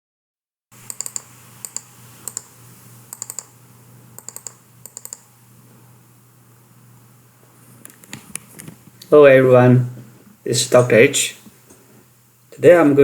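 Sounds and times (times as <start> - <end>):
sharp light clicks: 0.9 - 2.5, 3.1 - 3.5, 4.2 - 5.3.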